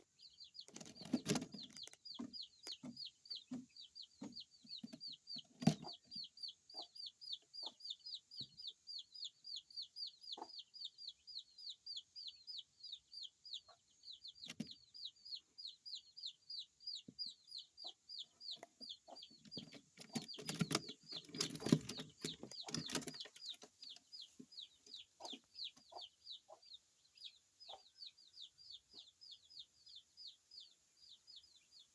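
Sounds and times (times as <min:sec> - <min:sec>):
pigeon squabs peeping: 0:18.6 - 0:24.0.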